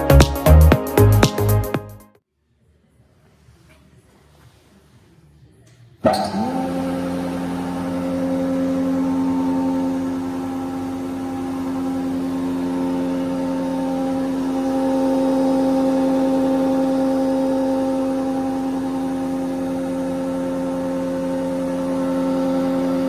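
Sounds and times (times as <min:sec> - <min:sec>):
jointer-planer running: 0:06.0 - 0:23.0.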